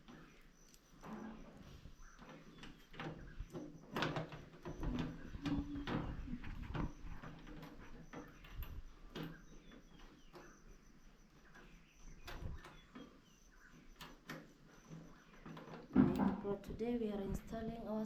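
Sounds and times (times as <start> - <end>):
tools knocking and clattering: 14.0 - 16.5.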